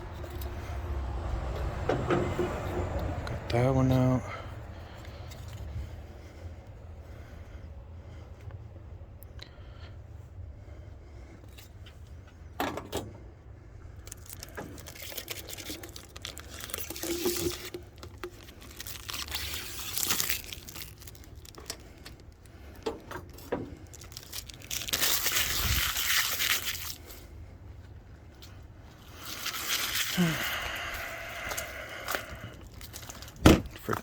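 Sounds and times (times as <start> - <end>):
rustling: 14.1 - 34.0.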